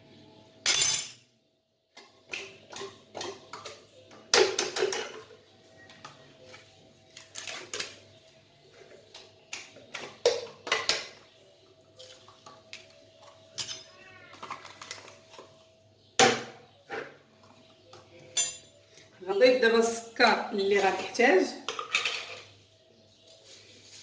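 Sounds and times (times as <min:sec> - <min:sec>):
kitchenware clinking and knocking: 0:00.7 - 0:01.3, 0:02.0 - 0:06.3, 0:09.1 - 0:11.3, 0:12.0 - 0:15.6, 0:16.2 - 0:18.8, 0:20.8 - 0:22.6.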